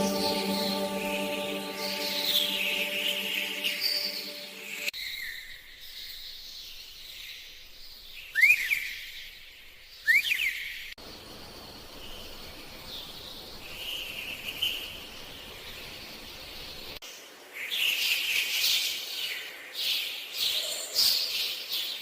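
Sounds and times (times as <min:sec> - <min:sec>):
outdoor ambience: 0:00.0 - 0:06.0, 0:09.4 - 0:17.6
bird chirping: 0:00.0 - 0:16.9.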